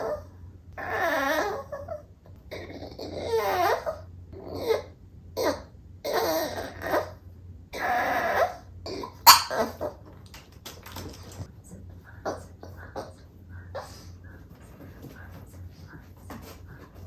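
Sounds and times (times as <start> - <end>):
dog whining and grumbling: 0.0 - 9.6.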